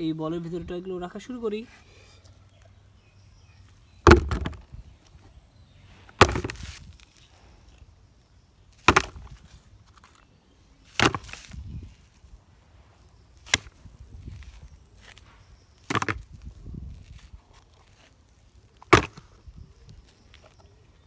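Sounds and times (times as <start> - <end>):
toy vehicles knocking into container: 4.0 - 4.7, 18.9 - 19.3.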